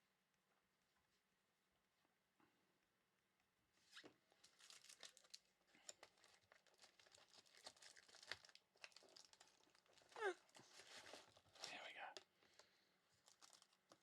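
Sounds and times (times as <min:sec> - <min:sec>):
plastic packaging crinkling: 0:04.4 - 0:11.8, 0:12.6 - 0:14.0.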